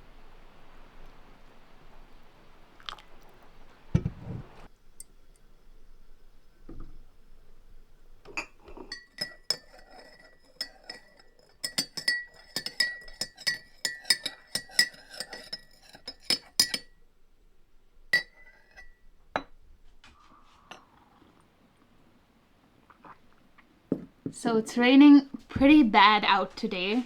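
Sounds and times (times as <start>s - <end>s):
dishware clinking: 8.3s - 17.0s, 18.2s - 19.6s.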